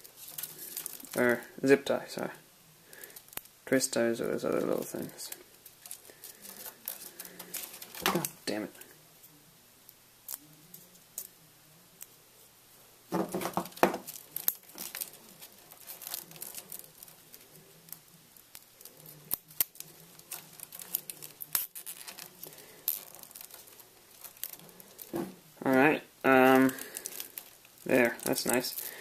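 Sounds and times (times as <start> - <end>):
rustling and crinkling plastic: 0.0 - 2.3, 4.0 - 9.0, 13.1 - 29.0.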